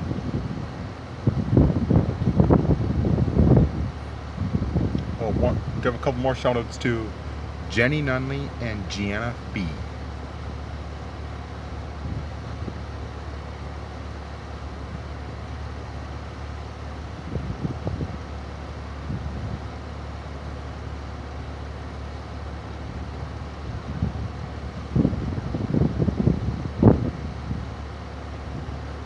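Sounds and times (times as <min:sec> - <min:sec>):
wind buffeting microphone: 0:00.4 - 0:05.8.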